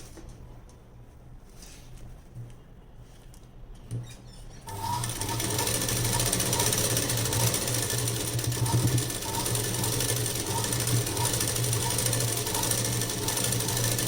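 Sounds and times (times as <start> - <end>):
sewing machine stitching: 4.7 - 14.0.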